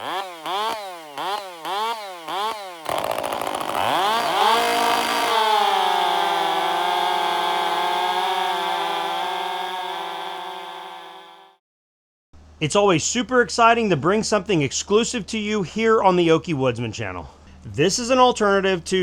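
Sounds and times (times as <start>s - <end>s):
chainsaw engine revving: 0.0s - 11.6s.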